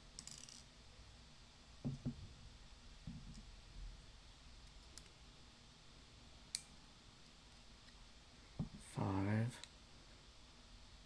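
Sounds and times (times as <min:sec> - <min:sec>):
small lock parts clicking: 0:00.2 - 0:00.7.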